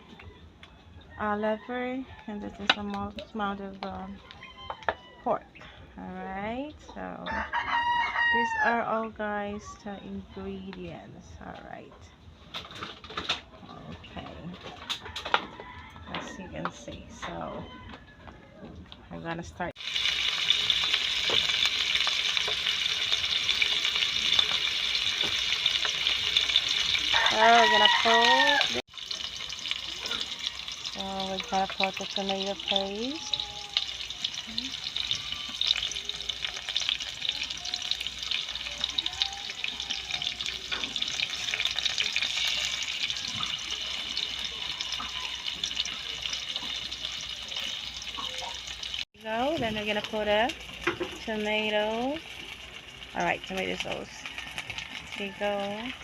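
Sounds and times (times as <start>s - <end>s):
food sizzling in hot oil: 19.7s - 56.0s.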